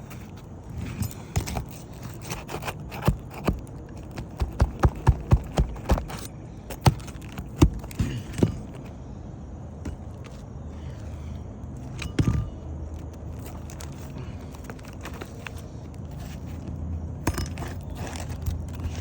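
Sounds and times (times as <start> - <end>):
hand tools knocking on roof shingle: 3.0 - 8.8.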